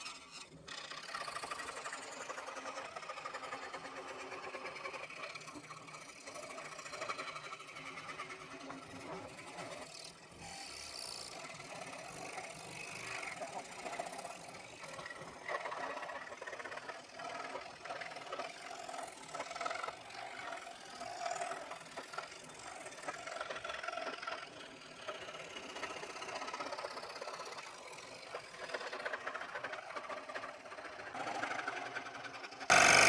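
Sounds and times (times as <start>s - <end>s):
scroll saw cutting: 0.0s - 7.6s, 25.0s - 33.0s.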